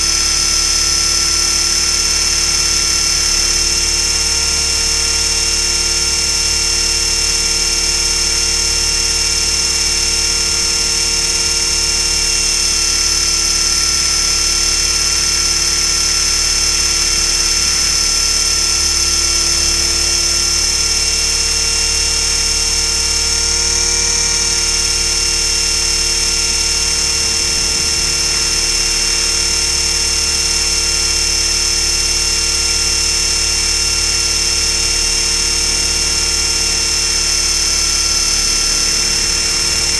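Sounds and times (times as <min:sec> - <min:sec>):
rc helicopter whine: 0:00.0 - 0:39.9.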